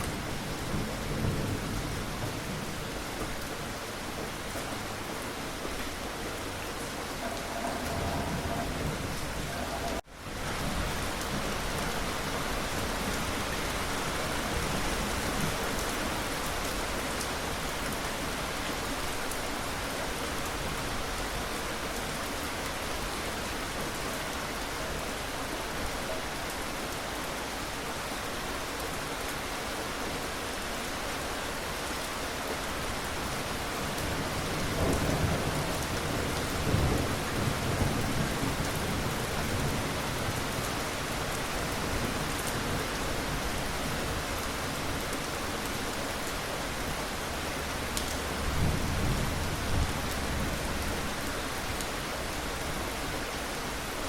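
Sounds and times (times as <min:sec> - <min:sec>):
rain pouring: 0:00.0 - 0:54.0
low thunder rolling: 0:06.9 - 0:10.0.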